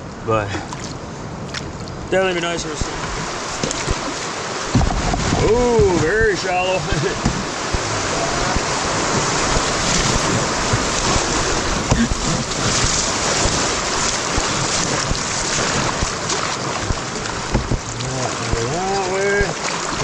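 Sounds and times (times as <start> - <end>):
whitewater rushing: 0.3 - 20.0
wind buffeting microphone: 1.0 - 20.0.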